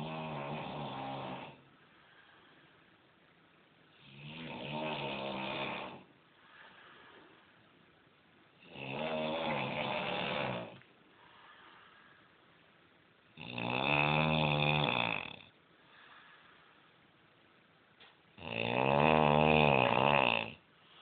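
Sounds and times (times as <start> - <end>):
man snoring: 0.0 - 1.7, 4.0 - 6.1, 8.6 - 10.8, 13.4 - 15.6, 18.4 - 20.6.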